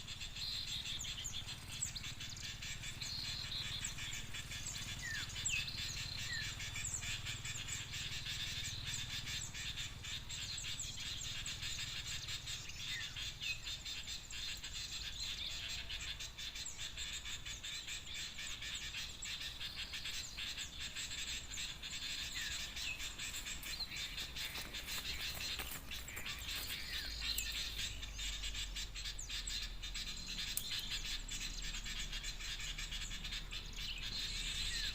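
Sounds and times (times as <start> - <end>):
small birds twittering: 0.0 - 34.9
high falling bird chirps: 16.8 - 34.9.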